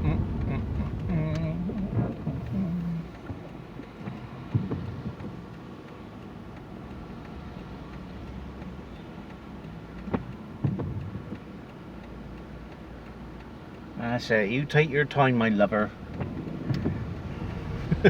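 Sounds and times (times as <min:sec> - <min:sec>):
car engine and tyres hum: 0:00.0 - 0:18.0
soft knocks: 0:04.0 - 0:05.4.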